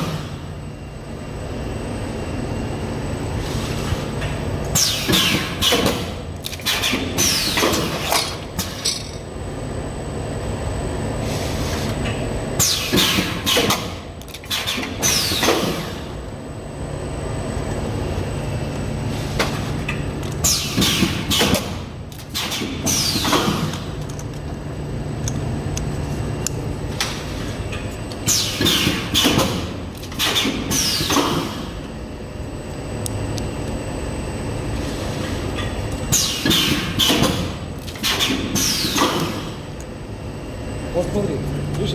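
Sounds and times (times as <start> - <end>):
production machine humming: 0.0 - 41.9
machine clatter and hiss: 3.3 - 9.3, 11.2 - 16.2, 18.2 - 24.6, 25.2 - 31.9, 34.6 - 39.9.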